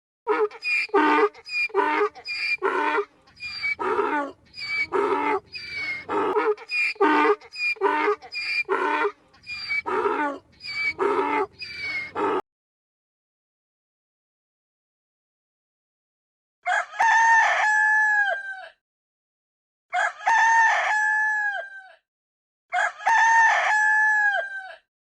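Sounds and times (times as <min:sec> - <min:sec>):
animal calling loudly: 0:00.3 - 0:12.4.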